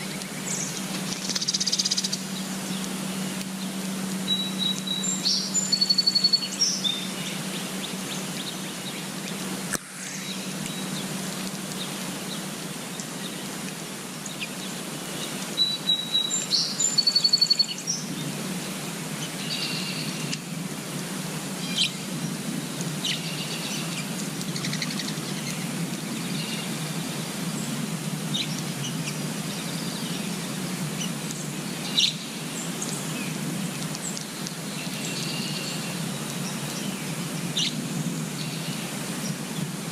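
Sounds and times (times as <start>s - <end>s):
background hiss with hum: 0.0s - 39.9s
songbird whistling and chirping: 4.2s - 7.1s, 15.6s - 18.0s.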